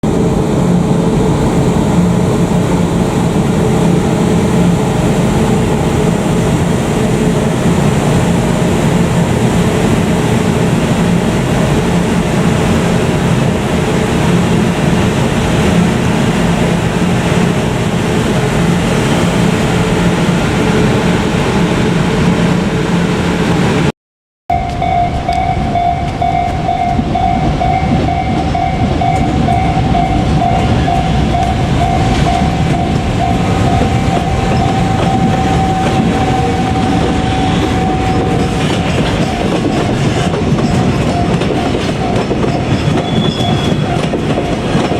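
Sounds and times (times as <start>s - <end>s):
electric locomotive humming: 0.0s - 23.9s, 24.5s - 44.9s
steady higher tone: 24.5s - 44.1s.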